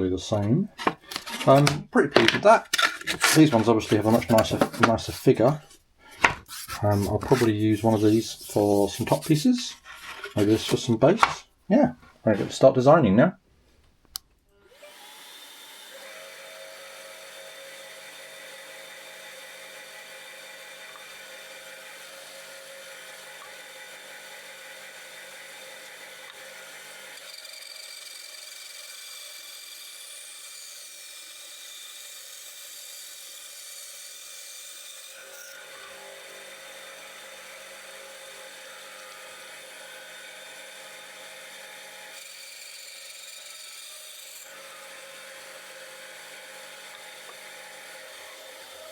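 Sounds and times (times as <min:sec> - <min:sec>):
small machine motor whirring: 0:14.7 - 0:48.9.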